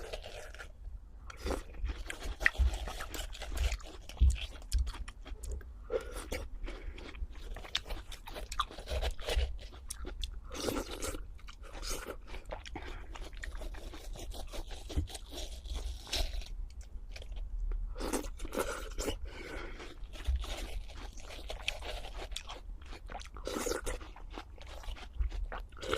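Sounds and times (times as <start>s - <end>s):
crunching and chewing crisp food: 0.0s - 25.9s.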